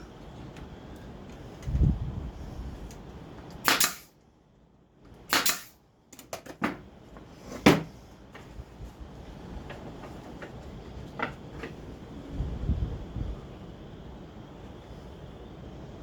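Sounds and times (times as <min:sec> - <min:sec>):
nail gun firing: 0:03.6 - 0:04.1, 0:05.3 - 0:05.8.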